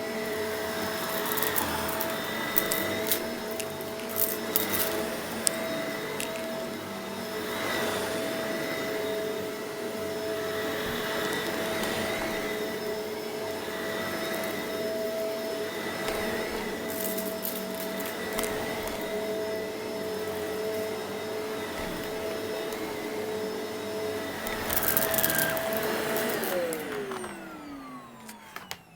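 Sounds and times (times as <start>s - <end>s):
vacuum cleaner whining: 0.0s - 28.9s
grit crackling in vacuum: 0.2s - 6.6s, 24.2s - 27.4s.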